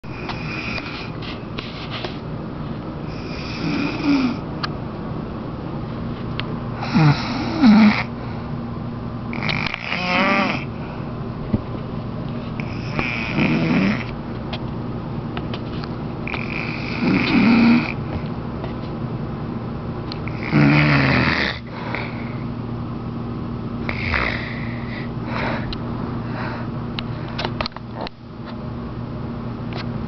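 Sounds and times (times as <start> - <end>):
woman snoring loudly: 3.1 - 4.4, 6.8 - 8.1, 9.3 - 10.7, 12.6 - 14.1, 16.3 - 18.0, 20.3 - 21.7, 23.9 - 25.0.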